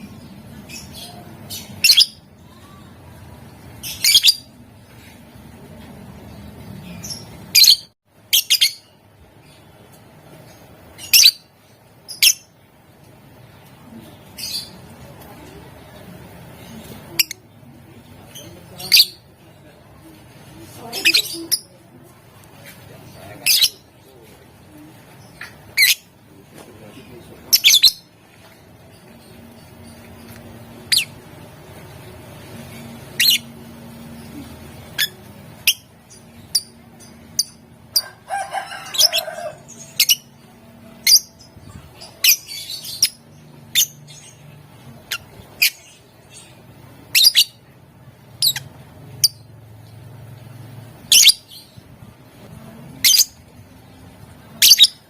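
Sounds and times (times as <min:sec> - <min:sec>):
lovebird chirping: 0:03.7 - 0:04.6, 0:10.5 - 0:11.5, 0:28.9 - 0:31.2, 0:32.6 - 0:37.8, 0:39.0 - 0:47.6, 0:51.0 - 0:51.8, 0:54.5 - 0:55.0
bird rapid chattering: 0:27.4 - 0:28.1.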